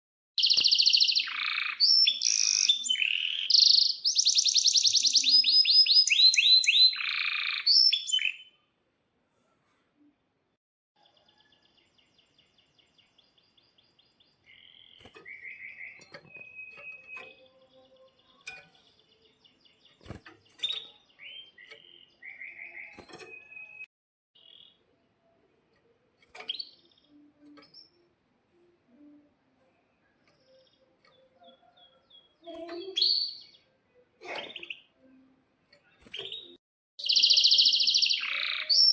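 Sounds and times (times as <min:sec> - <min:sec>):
canary singing trills and chirps: 0:00.4 - 0:08.6, 0:11.1 - 0:24.8, 0:30.2 - 0:33.8, 0:36.0 - 0:38.9.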